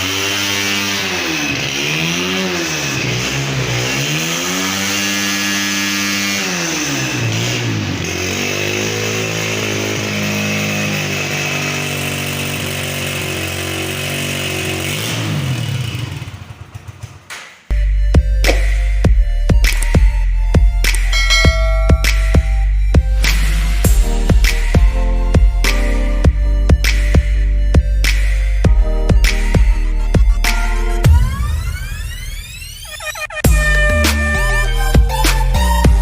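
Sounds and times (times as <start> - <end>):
motorcycle engine revving: 0.0 - 32.0.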